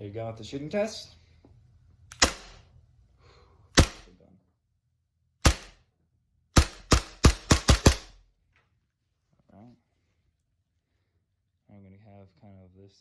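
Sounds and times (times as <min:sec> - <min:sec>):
airsoft pistol shots: 0:02.1 - 0:02.7, 0:03.8 - 0:04.2, 0:05.4 - 0:05.9, 0:06.5 - 0:08.2.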